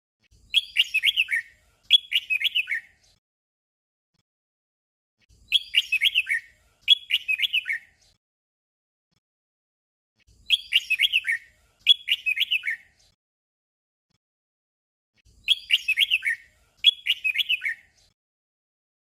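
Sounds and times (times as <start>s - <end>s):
bulbul warbling song: 0.5s - 2.8s, 5.5s - 7.9s, 10.4s - 12.8s, 15.4s - 18.0s.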